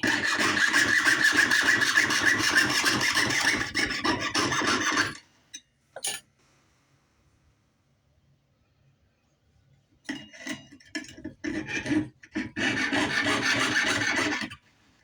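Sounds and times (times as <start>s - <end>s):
saw rasping through sheet metal: 0.0s - 5.2s, 10.4s - 14.6s.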